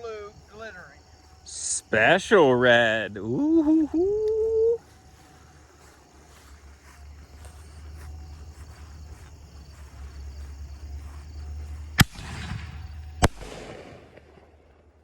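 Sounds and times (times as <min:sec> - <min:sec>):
steady low rumble: 0:00.0 - 0:15.0
firework bangs with echo: 0:12.0 - 0:14.5.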